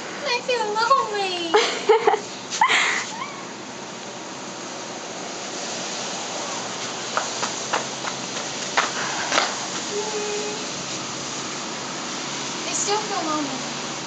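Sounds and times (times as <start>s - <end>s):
rain falling: 4.6s - 14.0s.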